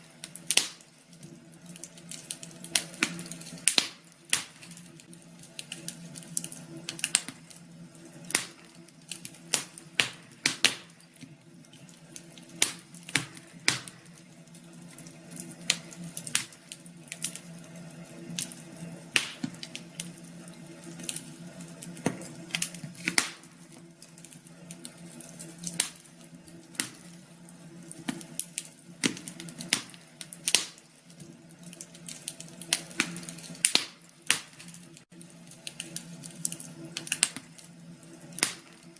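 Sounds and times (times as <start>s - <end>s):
wood fire crackling: 0.0s - 38.9s.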